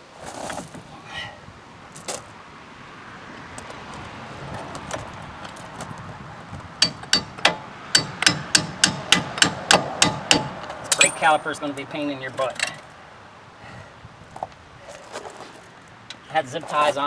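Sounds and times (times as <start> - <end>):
hammer striking metal: 6.8 - 11.6.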